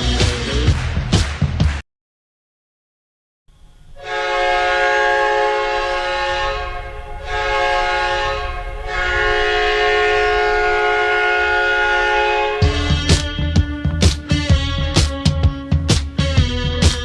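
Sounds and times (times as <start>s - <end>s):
goal horn blasts: 4.0s - 13.6s.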